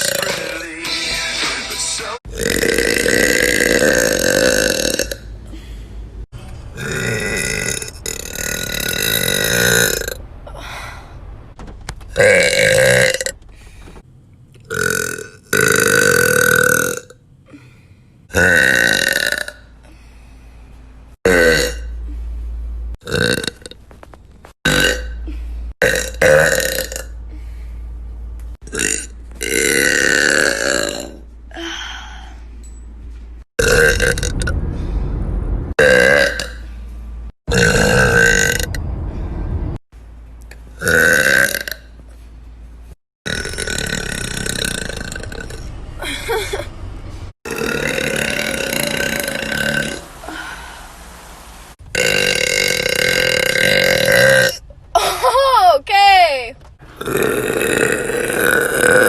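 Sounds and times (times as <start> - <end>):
young women burping loudly: 2.3 - 5.2, 47.5 - 50.4, 57.0 - 59.0.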